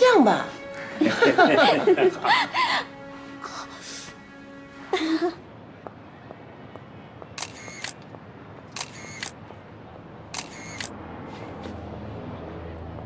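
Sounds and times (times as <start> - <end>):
camera shutter snap and whir: 7.4 - 8.0, 8.8 - 9.4, 10.3 - 11.0.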